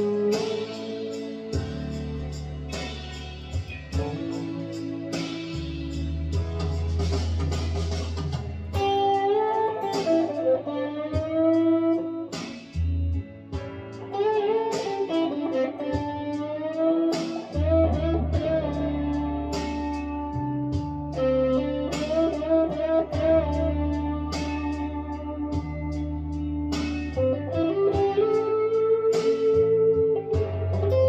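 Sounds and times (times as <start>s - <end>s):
electric guitar lead with bends: 0.0s - 6.2s, 8.6s - 31.0s
low sustained bass notes: 0.0s - 8.9s, 17.6s - 29.0s, 29.6s - 31.0s.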